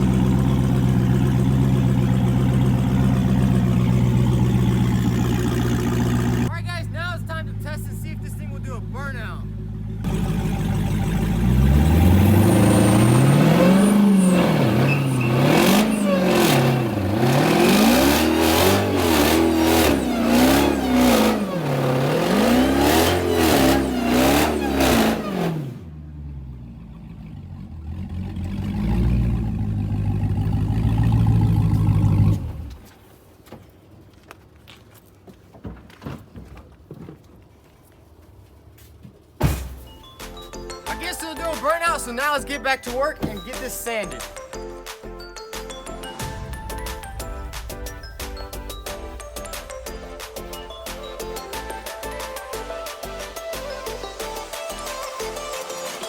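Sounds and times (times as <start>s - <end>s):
car engine revving: 0.0s - 32.9s.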